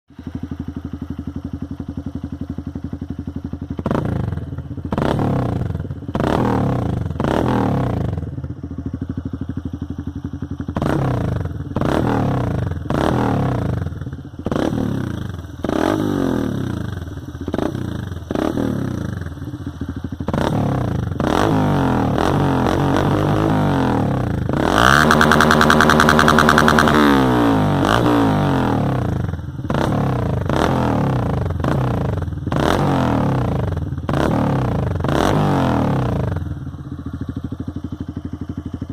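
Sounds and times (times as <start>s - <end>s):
motorcycle engine revving: 0.1s - 38.9s.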